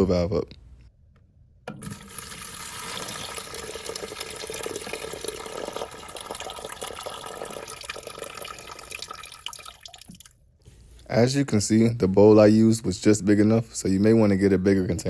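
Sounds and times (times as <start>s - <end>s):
water pouring into toilet bowl: 1.8s - 10.3s
water drips: 2.9s - 10.4s.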